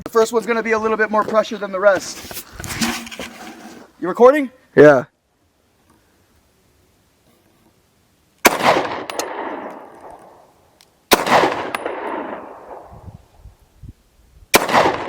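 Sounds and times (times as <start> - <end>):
pistol shots echoing: 8.4 - 10.4, 11.1 - 12.9, 14.5 - 15.0.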